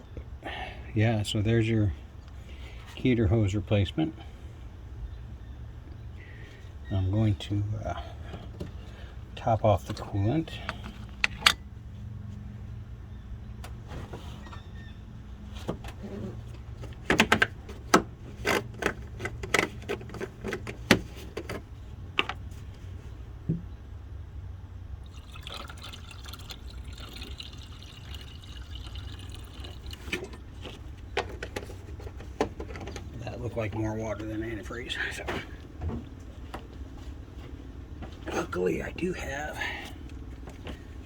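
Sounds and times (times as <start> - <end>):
low steady hum: 0.0 - 41.0
coolant pouring from a jug: 25.0 - 30.9.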